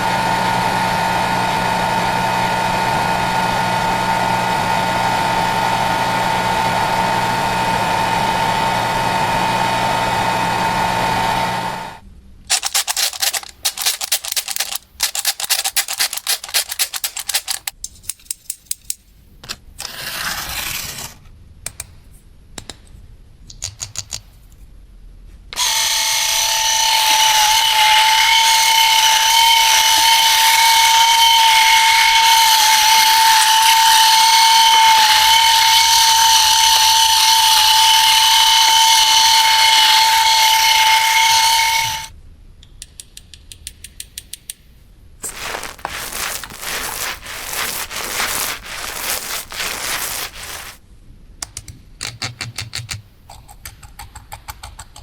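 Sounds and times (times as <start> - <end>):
plastic toy parts clicking: 12.5 - 19.0.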